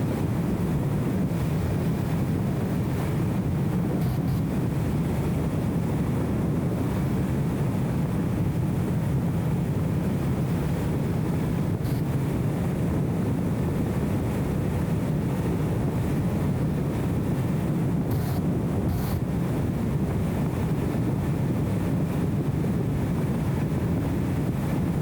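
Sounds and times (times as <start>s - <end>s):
road noise: 3.9s - 4.8s, 11.8s - 12.2s
car engine drone: 4.0s - 4.7s, 18.1s - 19.2s.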